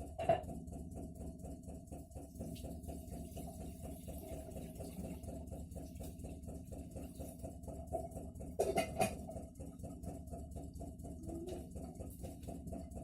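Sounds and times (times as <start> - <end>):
refrigerator knocking: 7.9 - 9.4.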